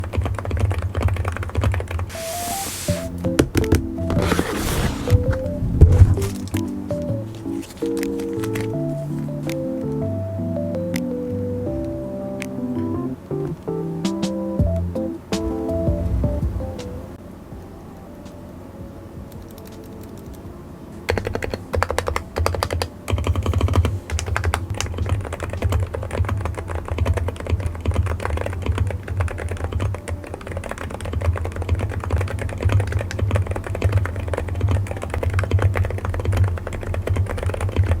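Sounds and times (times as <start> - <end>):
mechanical keyboard typing: 0.0 - 10.1, 19.3 - 20.4, 21.1 - 38.0.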